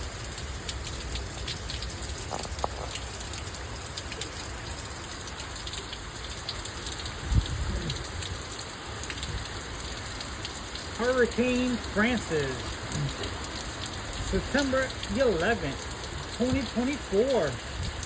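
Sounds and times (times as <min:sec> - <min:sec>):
heavy rain pattering: 0:00.0 - 0:18.0
wind rumbling on microphone: 0:07.1 - 0:08.4, 0:17.6 - 0:18.0.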